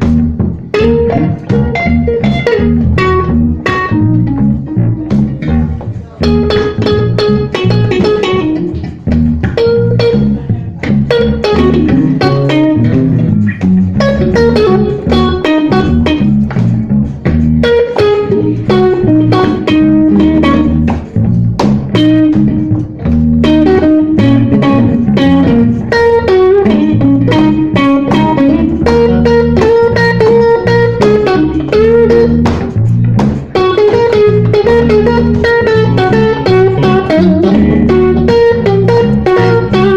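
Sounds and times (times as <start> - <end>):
bass guitar: 0.0 - 39.9
electric guitar lead lines: 0.0 - 39.9.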